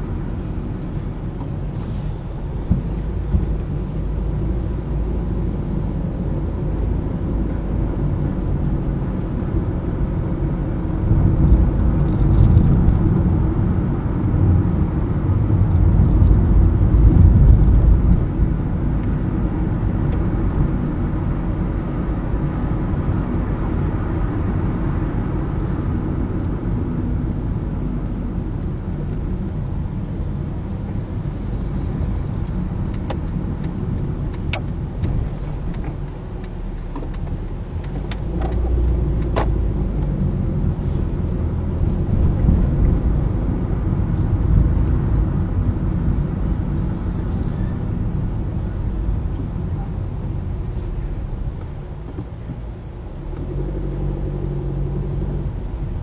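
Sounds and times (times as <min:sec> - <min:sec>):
car road and engine rumble: 0:00.0 - 0:56.0
faint ticks: 0:32.4 - 0:40.1.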